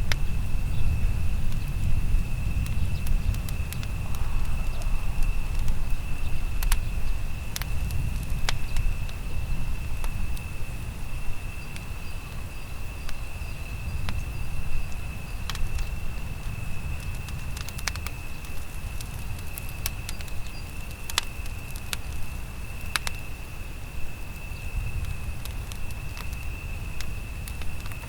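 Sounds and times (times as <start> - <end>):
low steady rumble: 0.0 - 20.7
wood fire crackling and popping: 0.0 - 28.0.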